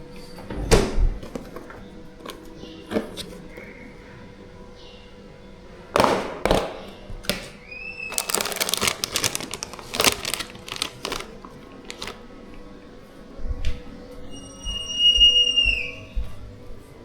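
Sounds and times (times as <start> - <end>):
small hard objects clicking: 8.1 - 11.3
short rising squeaks: 14.3 - 16.0.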